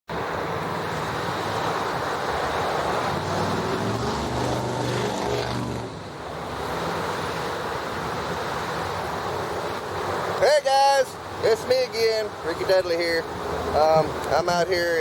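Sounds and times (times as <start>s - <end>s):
vehicle engine hum: 0.1s - 10.0s
traffic road and wind noise: 0.1s - 15.0s.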